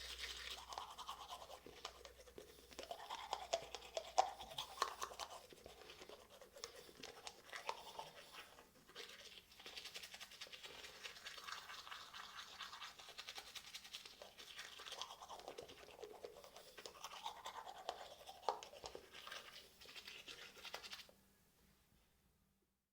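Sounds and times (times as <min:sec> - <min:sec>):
toothbrush scrubbing teeth: 0:00.0 - 0:21.1.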